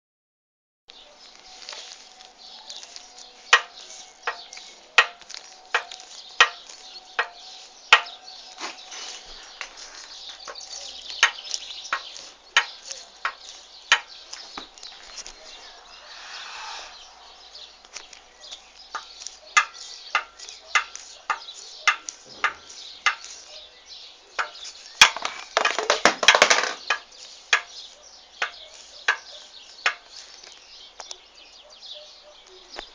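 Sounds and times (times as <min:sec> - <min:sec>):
sharp knocks: 0:19.6 - 0:23.2.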